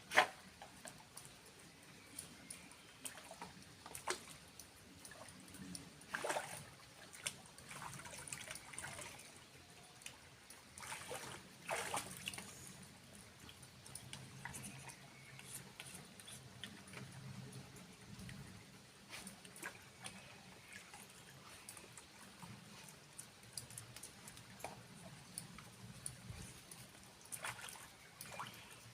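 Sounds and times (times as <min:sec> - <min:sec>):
water trickling and splashing: 0:00.0 - 0:28.9.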